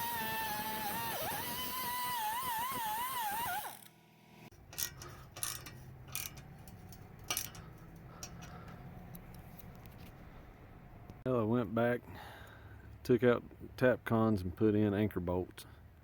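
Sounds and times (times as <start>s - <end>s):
metal tools clicking and knocking: 4.6s - 9.4s.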